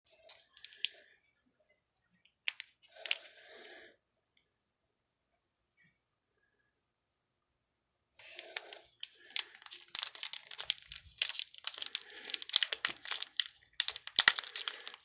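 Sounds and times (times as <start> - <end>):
card packaging clicking and crinkling: 0.3 - 0.9, 8.2 - 15.0.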